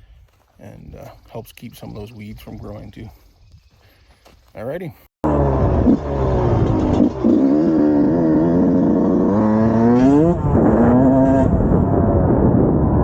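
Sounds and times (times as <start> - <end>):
dirt bike engine revving: 5.2 - 13.0.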